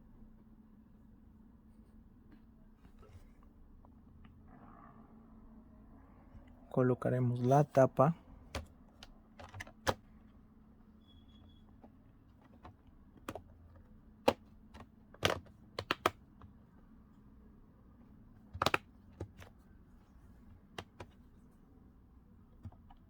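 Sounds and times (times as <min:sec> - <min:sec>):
plastic clips snapping in: 0:18.6 - 0:19.4.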